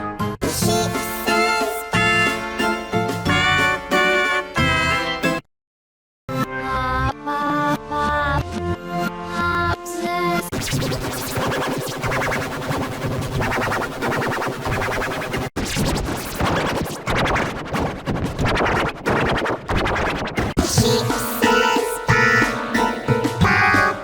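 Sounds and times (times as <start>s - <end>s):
distorted stuttering children's music: 0.4s - 5.4s, 10.4s - 24.0s.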